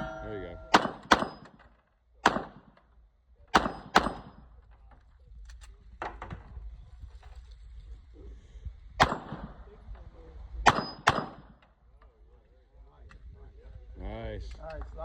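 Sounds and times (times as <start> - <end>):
struck steel ringing: 0.0 - 1.5
pistol shots: 0.0 - 1.6, 2.2 - 2.8, 3.5 - 4.4, 9.0 - 9.6, 10.7 - 11.6.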